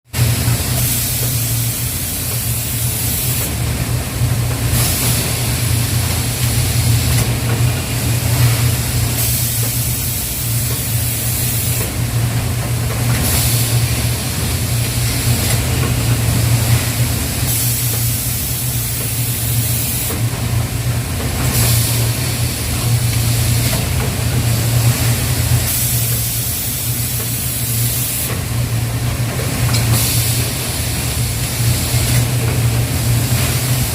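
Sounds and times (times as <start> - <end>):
machinery low hum: 0.2 - 33.9.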